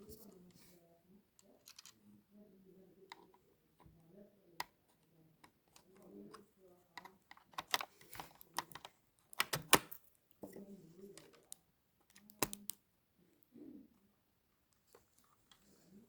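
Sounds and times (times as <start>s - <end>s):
keyboard clicks and taps: 7.0s - 10.0s, 12.1s - 12.8s.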